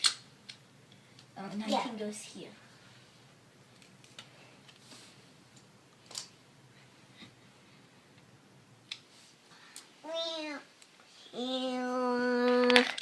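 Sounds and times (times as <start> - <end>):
child's voice: 1.5 - 2.4, 10.0 - 13.0.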